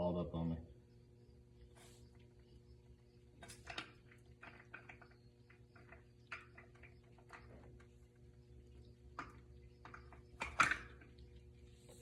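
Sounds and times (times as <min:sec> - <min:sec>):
clicks and rattles of wire: 0:03.4 - 0:08.0, 0:09.1 - 0:11.2.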